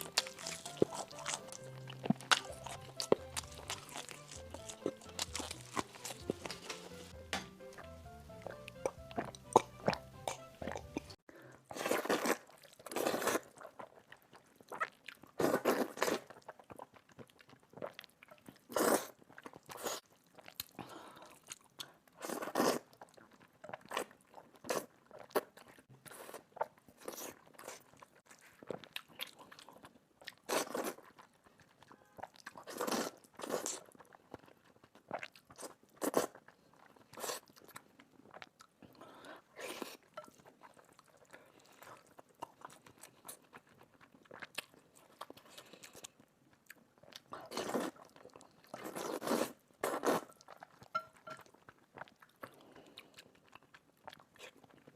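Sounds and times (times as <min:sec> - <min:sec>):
crunchy bites: 0:00.0 - 0:06.9
chewing: 0:00.0 - 0:07.2, 0:08.3 - 0:54.9.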